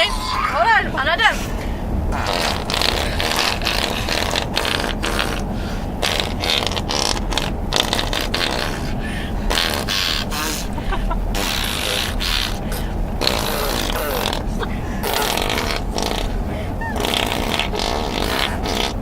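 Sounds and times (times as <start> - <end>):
car rumbling on road: 0.0 - 19.0
child making fake fart noises: 2.2 - 5.4, 6.0 - 8.8, 9.5 - 10.6, 11.3 - 19.0.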